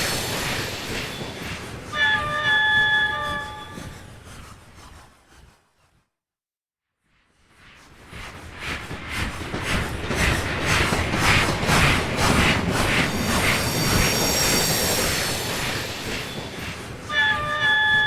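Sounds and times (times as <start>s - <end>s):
high steady squeal: 0.0s - 4.9s, 12.3s - 18.0s
steam locomotive chuffing: 0.0s - 4.9s, 8.4s - 18.0s.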